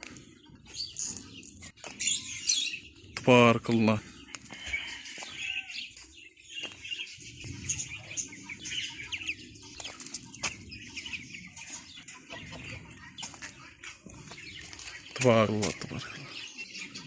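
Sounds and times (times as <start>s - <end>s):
chickens clucking: 0.0s - 17.0s
small birds chirping: 0.0s - 17.0s.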